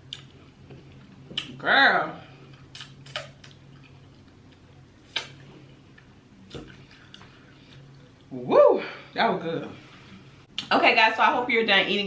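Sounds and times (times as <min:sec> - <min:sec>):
low steady hum: 0:00.0 - 0:12.0
mouth clicks and smacks: 0:02.7 - 0:03.9, 0:05.0 - 0:07.3.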